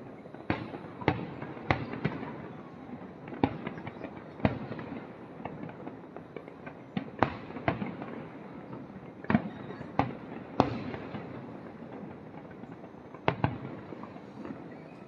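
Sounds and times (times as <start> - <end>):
light firework crackle: 0.0 - 15.0
firework shells booming: 3.2 - 14.8.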